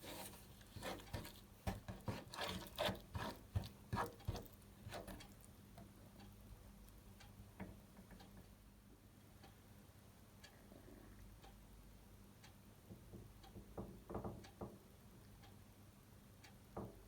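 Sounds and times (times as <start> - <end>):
faint clicks and taps: 0.0 - 8.6.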